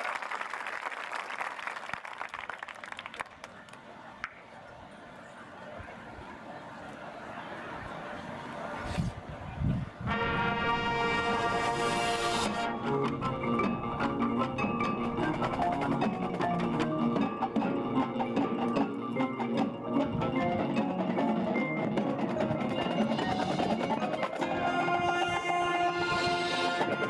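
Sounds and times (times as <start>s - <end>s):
marching band chord: 10.1s - 27.0s
mallet percussion: 12.8s - 27.0s.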